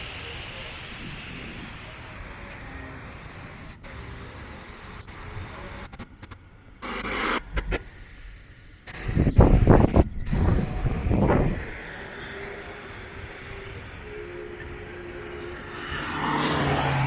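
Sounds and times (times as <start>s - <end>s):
low rumble: 5.1s - 15.7s.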